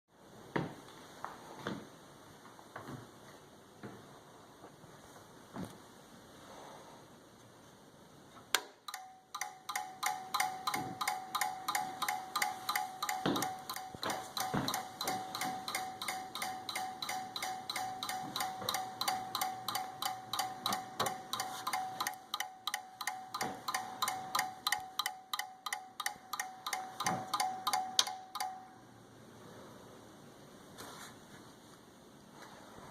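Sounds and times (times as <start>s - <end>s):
computer clicking rapidly: 8.9s - 28.6s
steady tone: 8.9s - 29.1s.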